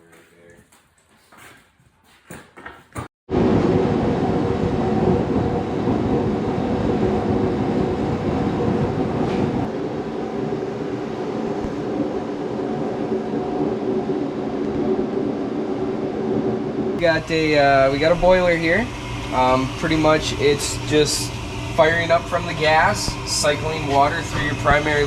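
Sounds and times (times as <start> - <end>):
boiler humming and rushing: 3.3 - 25.0.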